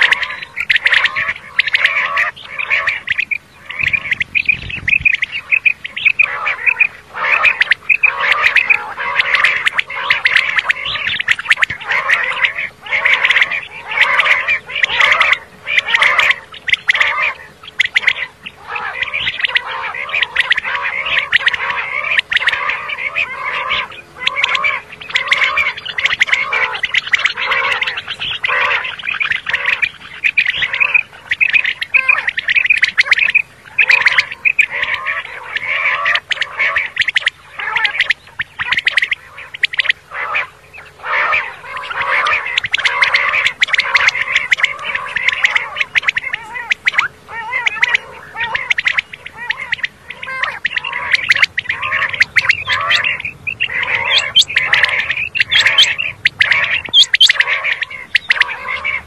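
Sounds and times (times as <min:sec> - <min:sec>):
quail calling: 0:00.0 - 0:59.0.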